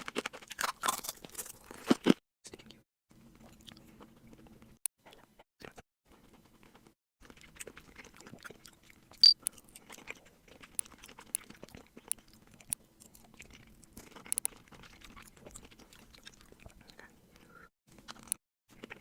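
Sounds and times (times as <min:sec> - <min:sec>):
close-up chewing and crunching food: 0:00.0 - 0:19.0.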